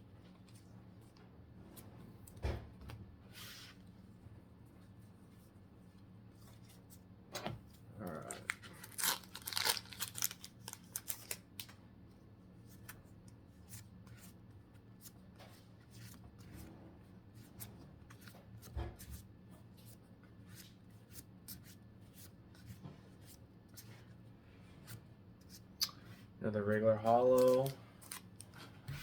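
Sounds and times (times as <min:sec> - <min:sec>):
trading cards being flipped: 0:08.2 - 0:11.8, 0:27.3 - 0:29.0.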